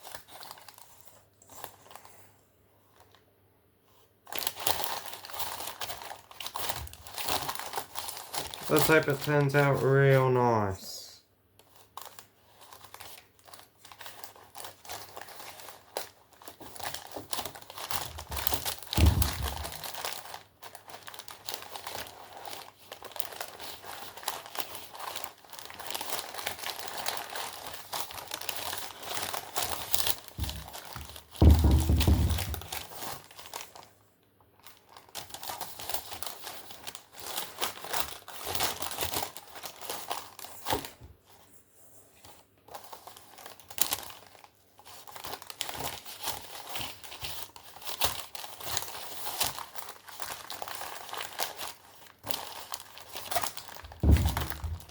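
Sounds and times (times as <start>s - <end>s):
crinkly wrapping rustling: 0.0s - 10.7s, 11.6s - 34.0s, 34.6s - 41.5s, 42.2s - 54.9s
dull thumps: 18.4s - 20.0s, 30.4s - 32.8s, 53.9s - 54.9s.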